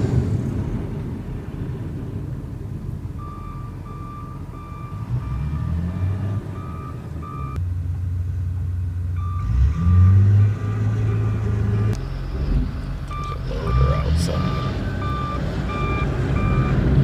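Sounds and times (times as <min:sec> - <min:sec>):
loader engine running: 0:00.0 - 0:17.0
backup alarm beeping: 0:03.2 - 0:07.6, 0:09.2 - 0:12.0, 0:13.1 - 0:16.8.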